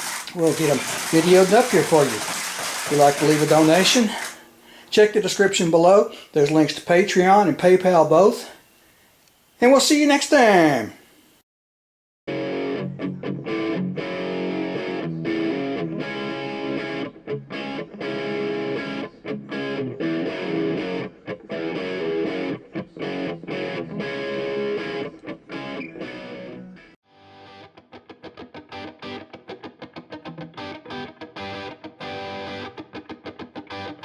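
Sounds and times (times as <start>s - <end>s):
distorted electric guitar strumming: 12.3s - 34.0s.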